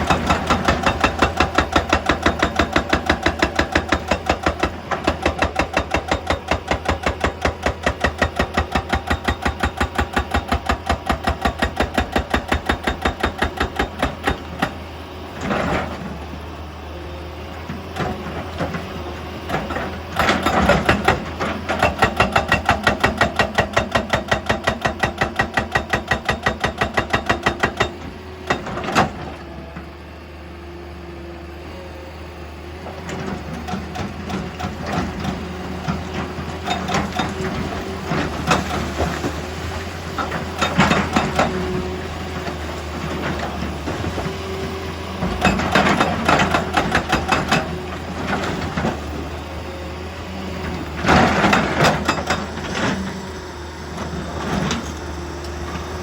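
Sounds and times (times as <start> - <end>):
diesel engine hum: 28.0 - 56.0.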